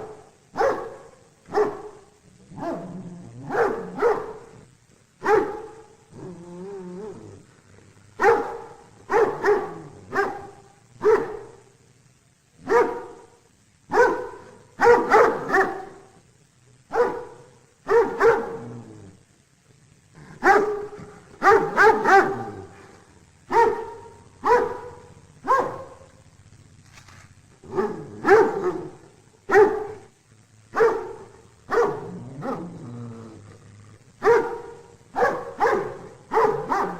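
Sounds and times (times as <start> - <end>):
dog barking: 0.0 - 4.6, 5.2 - 5.9, 8.2 - 11.6, 12.6 - 16.2, 16.9 - 18.8, 20.4 - 22.8, 23.5 - 26.1, 27.6 - 30.1, 30.7 - 32.7, 34.2 - 36.9.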